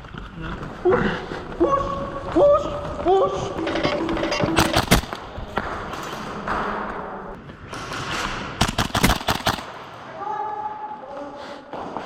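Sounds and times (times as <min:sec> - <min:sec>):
airsoft guns firing: 0:04.4 - 0:05.4, 0:07.8 - 0:10.2.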